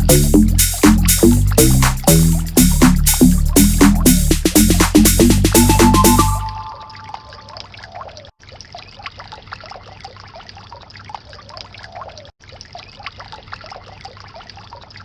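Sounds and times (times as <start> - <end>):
water feature trickling and splashing: 7.1 - 15.0.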